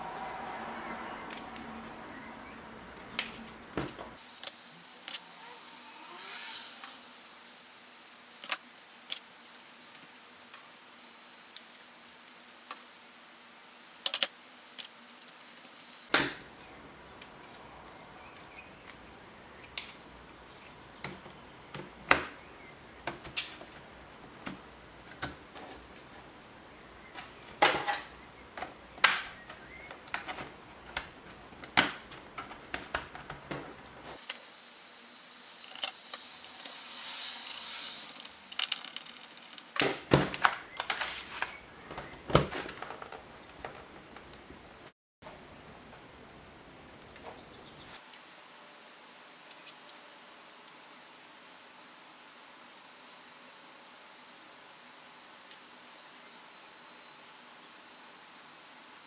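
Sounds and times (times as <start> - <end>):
small hardware clicks and rattles: 35.6 - 39.9.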